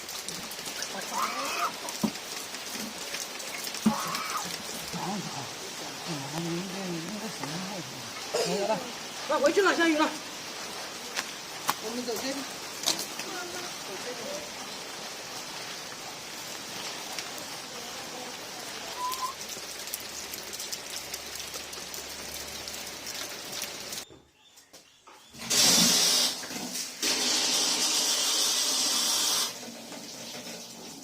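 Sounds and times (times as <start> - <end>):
water rushing out: 0.0 - 24.0, 25.4 - 29.7
rain pattering: 0.0 - 24.1.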